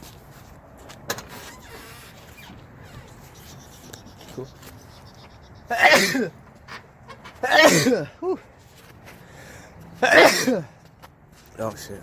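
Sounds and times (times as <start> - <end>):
person sneezing: 5.7 - 6.4, 7.4 - 8.4, 10.0 - 10.7.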